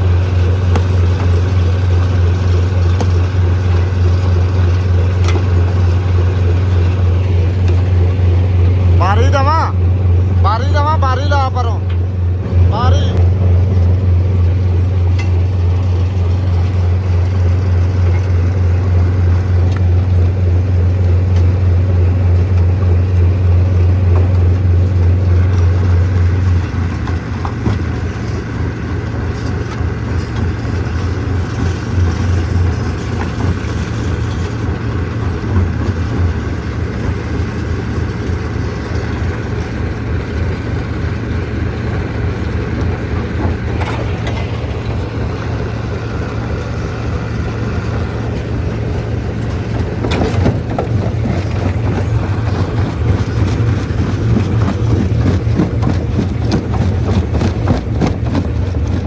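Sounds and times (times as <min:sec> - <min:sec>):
heavy machinery engine humming: 0:00.0 - 0:59.0.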